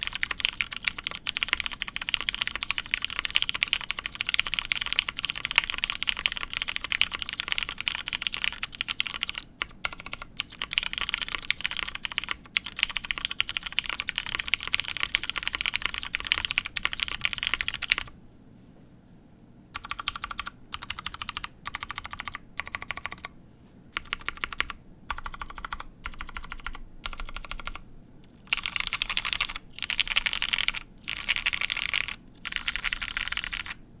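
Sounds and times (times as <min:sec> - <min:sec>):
mechanical keyboard typing: 0:00.0 - 0:18.1, 0:19.8 - 0:23.3, 0:24.0 - 0:33.8.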